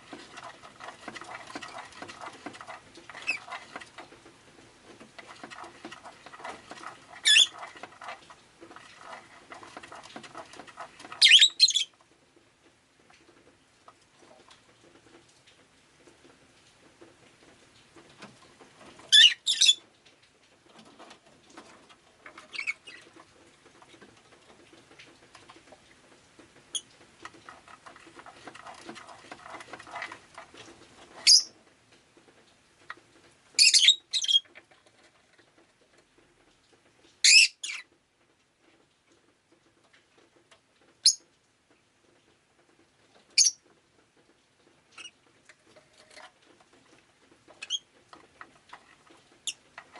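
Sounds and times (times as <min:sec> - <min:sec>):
lovebird chirping: 0:07.2 - 0:07.5, 0:11.2 - 0:11.9, 0:19.1 - 0:19.8, 0:31.2 - 0:31.5, 0:43.4 - 0:43.6.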